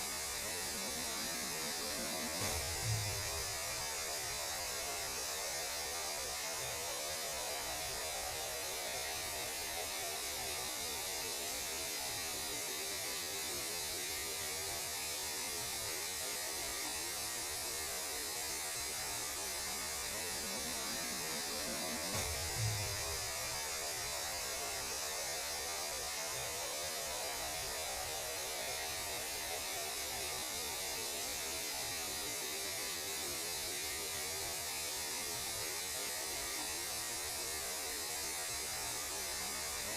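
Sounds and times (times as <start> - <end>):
static-like hiss: 0.0 - 39.9
low hum: 1.6 - 3.8
low thump: 2.4 - 3.6, 22.1 - 23.3.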